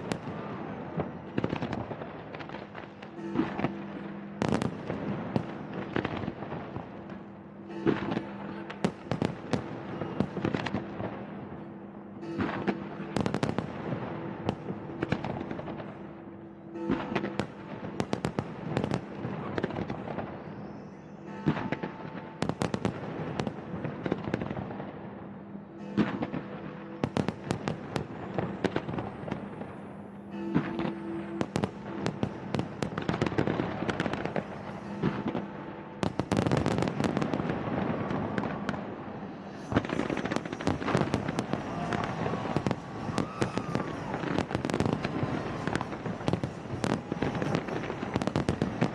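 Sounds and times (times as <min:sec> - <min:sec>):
fireworks bangs and crackling: 0:00.0 - 0:11.6, 0:12.2 - 0:16.0, 0:16.7 - 0:48.9
music playing: 0:25.4 - 0:48.9.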